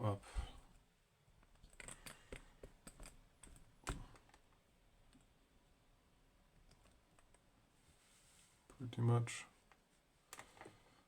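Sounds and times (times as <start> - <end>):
faint clicks of lock parts: 1.4 - 5.4, 6.6 - 7.5, 9.6 - 10.8.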